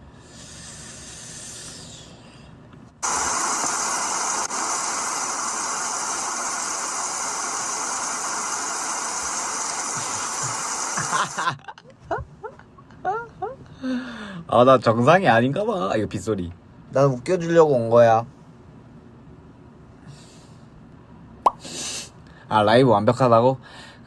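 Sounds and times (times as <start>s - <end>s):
rain hiss: 3.0s - 11.5s.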